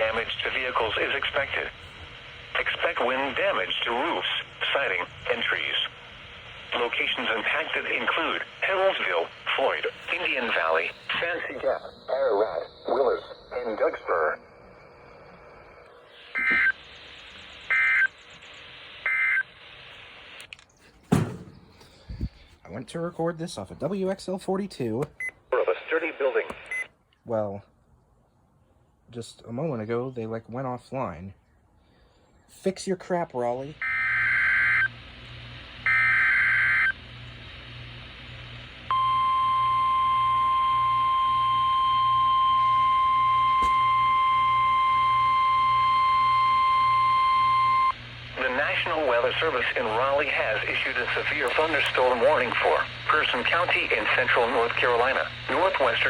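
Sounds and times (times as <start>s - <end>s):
radio hiss: 0.0s - 27.6s, 31.9s - 56.0s
piercing warning alarm tone: 9.6s - 15.0s, 16.1s - 19.6s, 33.7s - 35.1s, 35.8s - 37.1s, 38.9s - 49.6s
digital data tone bursts: 38.9s - 48.9s.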